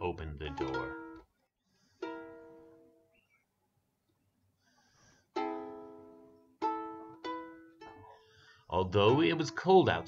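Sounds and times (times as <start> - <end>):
plucks on small string instrument: 0.4 - 1.3, 5.4 - 8.2, 8.9 - 10.0.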